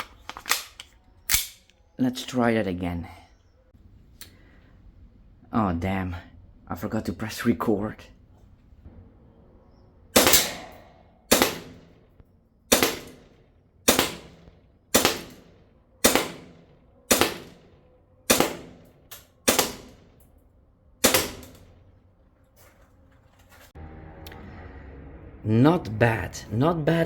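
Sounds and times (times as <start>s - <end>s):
airsoft pistol shots: 10.2s - 11.9s, 12.7s - 15.4s, 16.0s - 17.6s, 18.3s - 20.1s, 21.0s - 21.6s.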